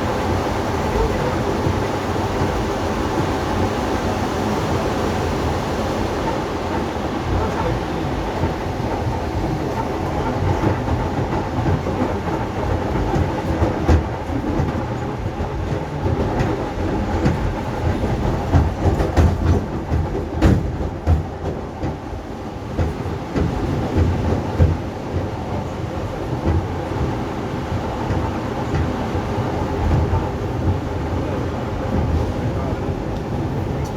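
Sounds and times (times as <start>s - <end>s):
train rumble and hum: 0.0s - 33.9s
wheels clicking over rail joints: 6.4s - 27.2s.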